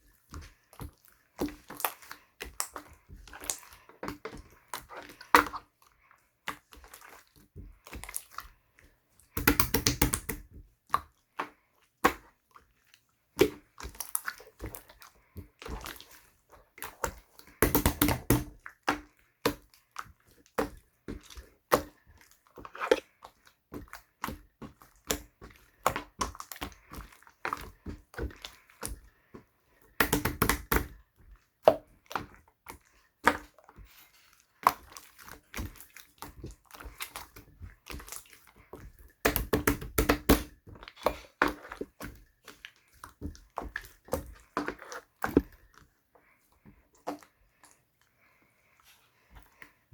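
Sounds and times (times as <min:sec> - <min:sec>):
slime clicking and popping: 0:09.4 - 0:10.4.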